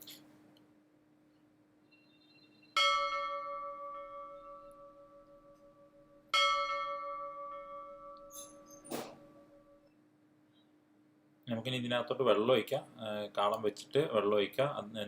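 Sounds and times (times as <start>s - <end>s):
metallic strikes ringing: 2.8s - 9.9s.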